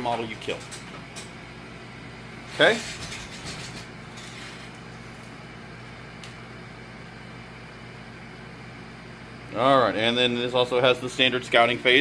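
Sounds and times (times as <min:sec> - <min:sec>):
low room hum: 0:00.0 - 0:12.0.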